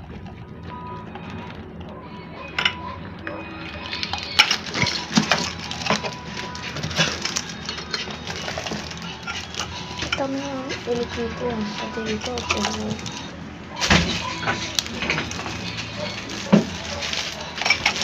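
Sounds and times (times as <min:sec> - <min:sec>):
small containers clinking: 0:00.0 - 0:18.0.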